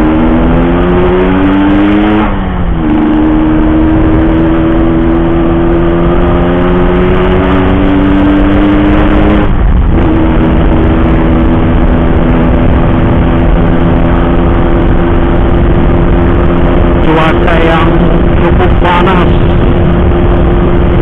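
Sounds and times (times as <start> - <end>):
motorcycle engine revving: 0.0 - 21.0.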